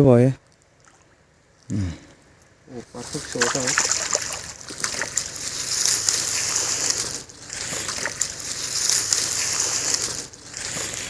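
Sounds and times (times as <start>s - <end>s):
fish thrashing and splashing water: 3.0s - 11.0s.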